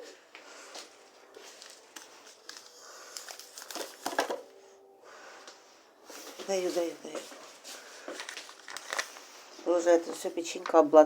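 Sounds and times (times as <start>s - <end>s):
snack packaging crinkling: 1.4s - 4.4s, 8.0s - 9.4s.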